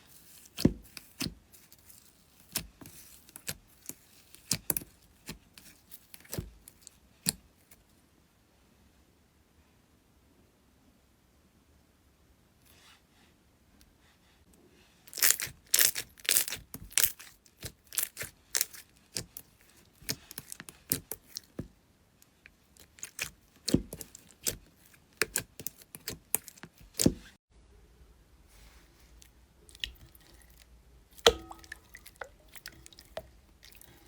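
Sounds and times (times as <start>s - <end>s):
slime crackling and popping: 15.1s - 21.6s, 22.8s - 27.3s.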